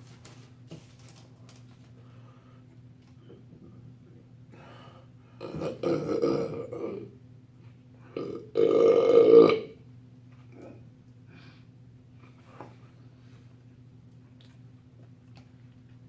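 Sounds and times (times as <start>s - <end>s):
man burping loudly: 5.4s - 7.1s, 8.2s - 9.8s.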